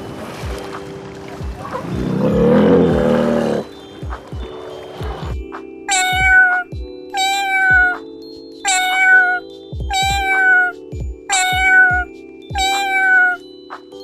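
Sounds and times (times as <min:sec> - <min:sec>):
background music with beat: 0:00.2 - 0:14.0
cat meowing: 0:05.9 - 0:08.0, 0:08.7 - 0:13.4.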